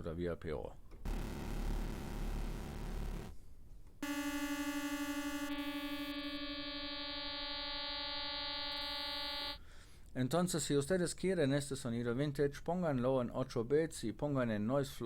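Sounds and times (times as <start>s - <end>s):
bright held synthesizer tone: 1.1s - 3.4s, 4.0s - 9.6s
low gritty synthesizer note: 1.1s - 3.4s, 4.0s - 9.4s.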